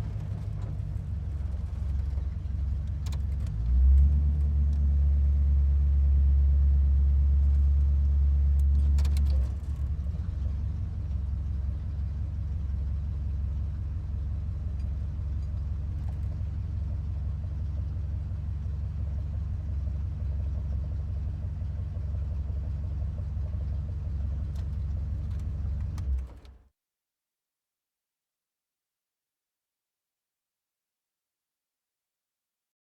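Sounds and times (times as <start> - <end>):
monster truck engine rumbling: 0.0 - 5.2.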